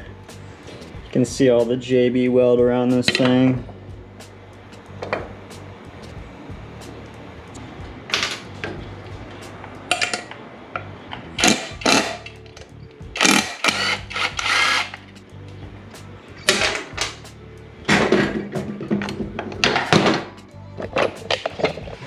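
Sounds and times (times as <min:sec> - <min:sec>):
background music: 0:00.0 - 0:22.0
tool working on bolts: 0:11.4 - 0:12.4, 0:13.2 - 0:15.0.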